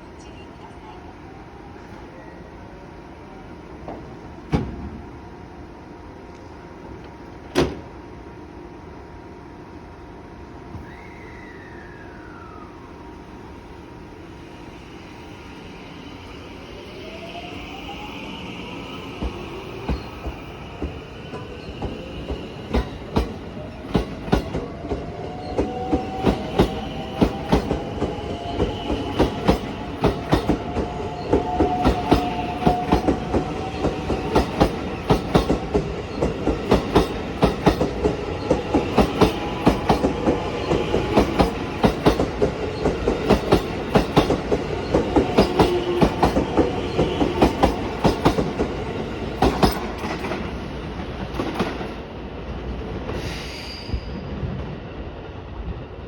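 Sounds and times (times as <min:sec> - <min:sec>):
electric train motors whining: 0:10.7 - 0:51.0.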